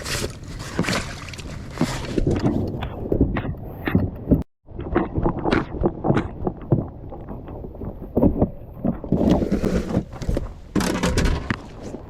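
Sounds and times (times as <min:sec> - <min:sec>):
kayak knocks and bumps: 0:07.7 - 0:12.0.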